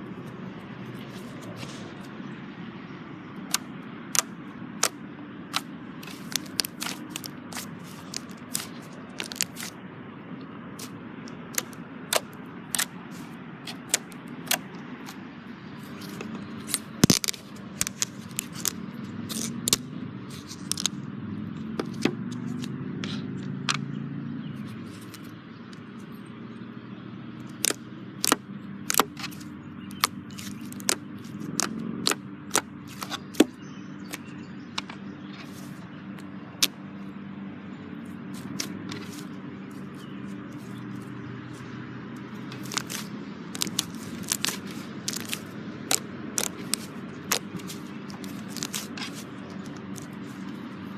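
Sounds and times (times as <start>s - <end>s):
soft rustle: 0.2s - 2.2s
slime popping and crackling: 6.0s - 9.7s.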